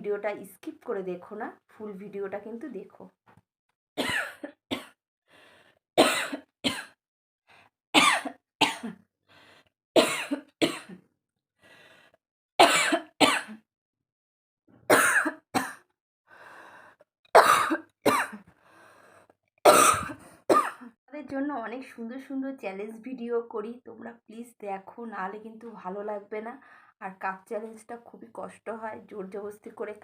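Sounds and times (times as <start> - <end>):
woman coughing: 4.0 - 5.0, 6.0 - 7.0, 8.0 - 9.0, 10.0 - 11.0, 12.6 - 13.6, 14.9 - 15.8, 17.4 - 18.4, 19.7 - 21.0
faint breaths: 5.3 - 5.8, 11.6 - 12.2, 16.3 - 17.0, 18.5 - 19.4, 26.6 - 27.0.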